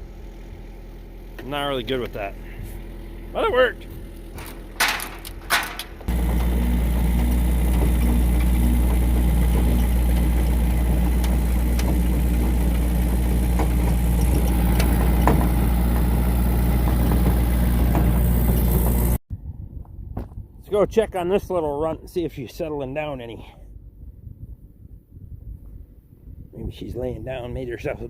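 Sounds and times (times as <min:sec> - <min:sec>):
motor humming: 0:02.6 - 0:19.2.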